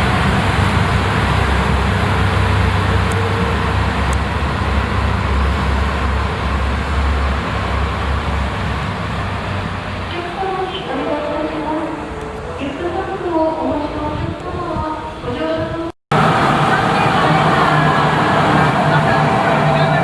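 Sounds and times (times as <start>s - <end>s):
vehicle engine rumble: 0.0s - 10.1s, 16.1s - 20.0s
background noise haze: 16.1s - 20.0s.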